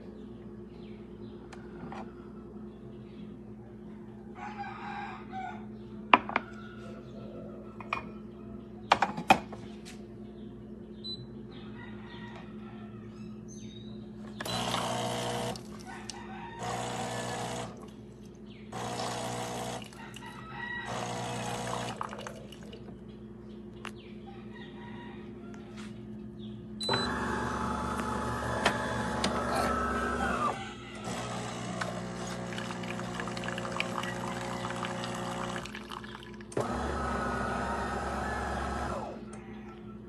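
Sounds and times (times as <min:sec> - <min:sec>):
espresso machine humming: 0:14.4 - 0:15.8, 0:16.6 - 0:17.9, 0:18.8 - 0:20.0, 0:20.8 - 0:22.6, 0:26.8 - 0:39.2.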